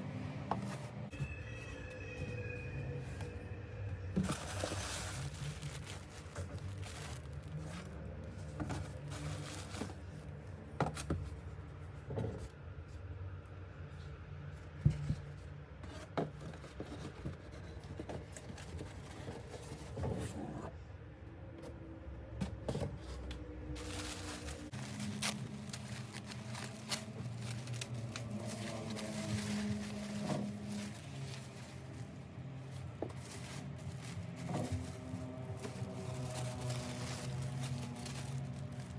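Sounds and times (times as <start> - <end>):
hands handling a bag: 4.2 - 10.2, 23.7 - 38.9.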